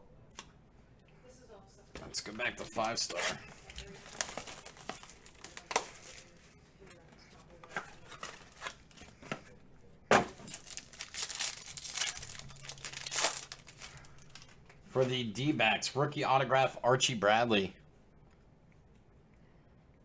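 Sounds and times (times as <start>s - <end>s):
plastic wrap tearing and crinkling: 2.8s - 6.5s, 7.8s - 9.1s, 10.2s - 14.7s.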